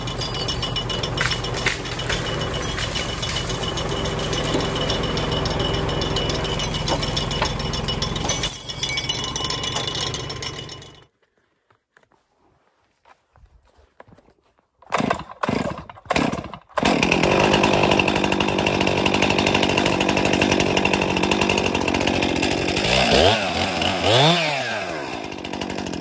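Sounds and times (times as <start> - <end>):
metallic rattling and clinking: 0.0 - 11.0
tractor engine running: 0.0 - 11.1, 16.8 - 24.4.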